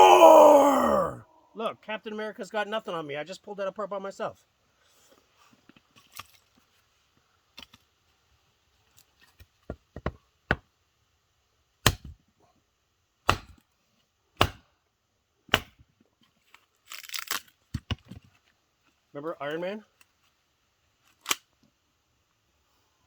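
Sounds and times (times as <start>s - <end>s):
hatchet chopping wood: 11.8s - 12.2s, 13.2s - 13.6s, 14.4s - 14.7s, 15.5s - 15.8s.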